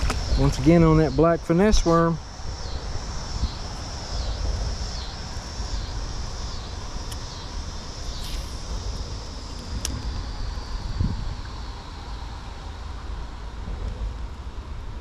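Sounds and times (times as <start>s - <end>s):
insect chorus: 0.0s - 15.0s
wind rumbling on microphone: 0.0s - 15.0s.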